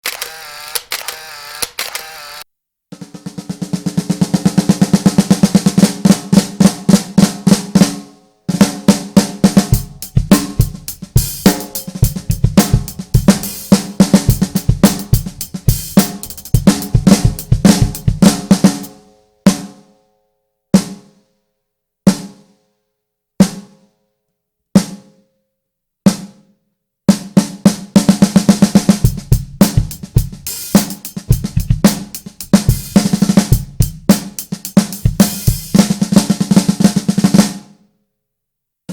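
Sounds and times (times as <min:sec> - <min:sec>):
snare drum roll: 0:03.0 - 0:08.0, 0:08.6 - 0:18.9, 0:27.7 - 0:37.6.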